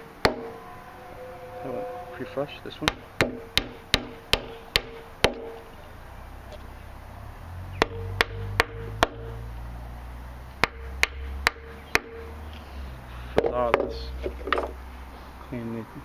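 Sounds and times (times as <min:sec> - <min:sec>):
low steady hum: 0:00.0 - 0:08.5.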